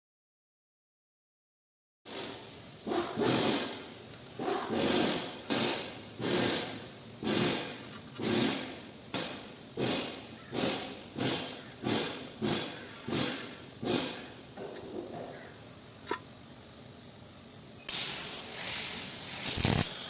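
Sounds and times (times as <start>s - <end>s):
welding arc crackling: 17.9s - 20.0s.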